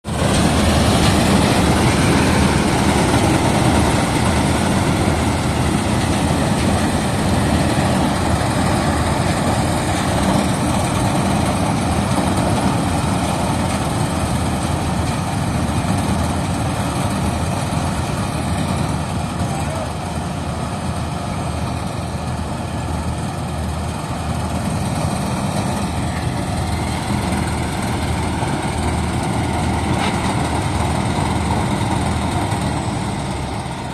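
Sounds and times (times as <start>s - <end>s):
combine harvester running: 0.0s - 33.9s.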